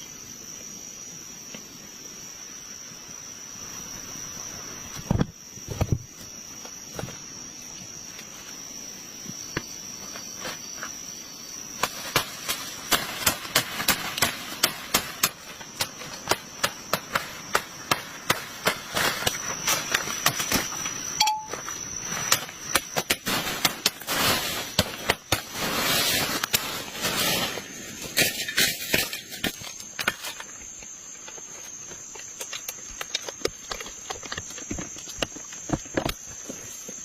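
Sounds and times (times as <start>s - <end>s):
insects droning: 0.0s - 37.0s
scraping and rustling: 23.3s - 30.6s.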